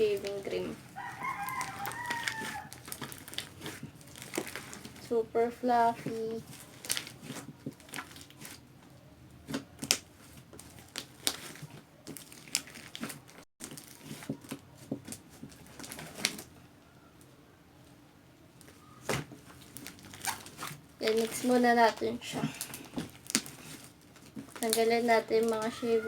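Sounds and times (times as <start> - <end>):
hands kneading sticky slime: 0.0 - 16.6, 18.6 - 26.0.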